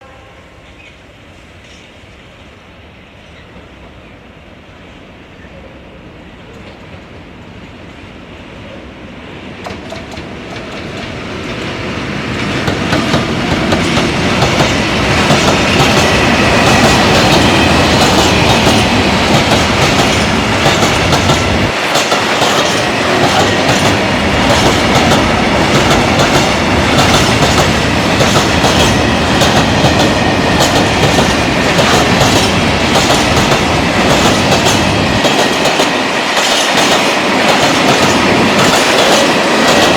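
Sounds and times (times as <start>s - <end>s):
freight train wheels clacking: 9.6s - 39.9s.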